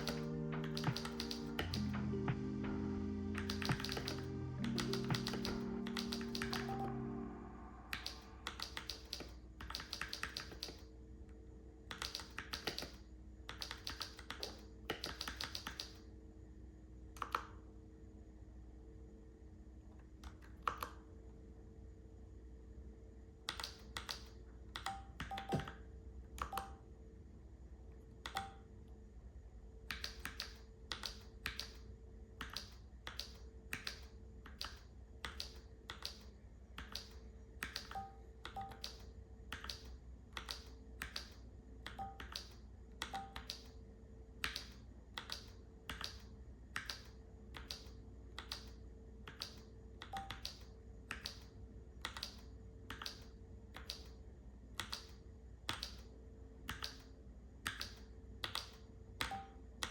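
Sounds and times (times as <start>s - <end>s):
mechanical keyboard keystrokes: 0.0s - 1.9s, 3.4s - 6.9s, 7.9s - 10.8s, 11.9s - 16.0s.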